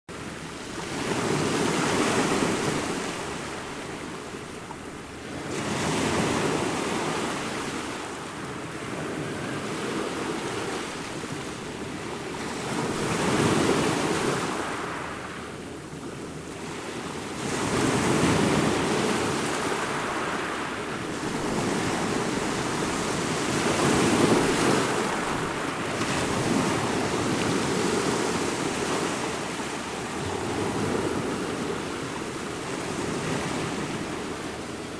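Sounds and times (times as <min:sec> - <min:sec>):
ocean waves breaking on shore: 0:00.1 - 0:34.9.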